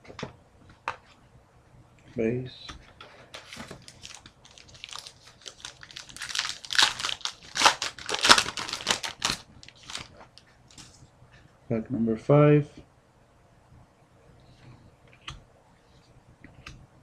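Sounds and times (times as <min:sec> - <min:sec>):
foil wrapper crinkling and tearing: 0:03.5 - 0:10.8.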